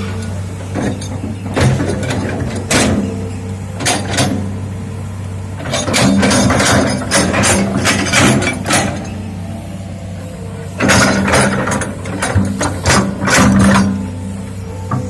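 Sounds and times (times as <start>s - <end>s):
excavator diesel engine running: 0.0s - 15.0s
metallic clanks and knocks: 0.2s - 3.2s, 3.8s - 4.6s, 5.6s - 9.3s, 10.7s - 14.2s.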